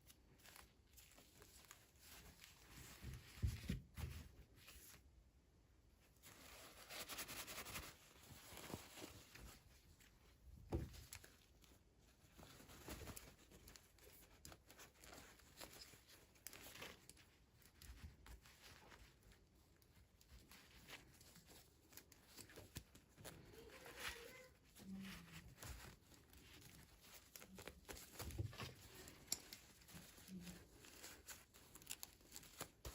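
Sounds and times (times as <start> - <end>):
toy packaging rustling: 10.7 - 32.9.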